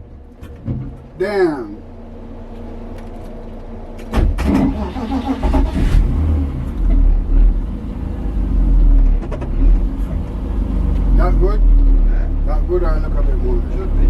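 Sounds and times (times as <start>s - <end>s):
car engine revving: 1.2s - 14.0s.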